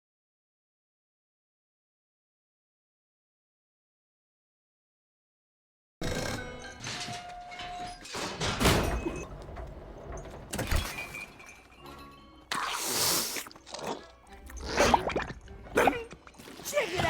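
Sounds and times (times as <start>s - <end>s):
music: 6.0s - 17.0s.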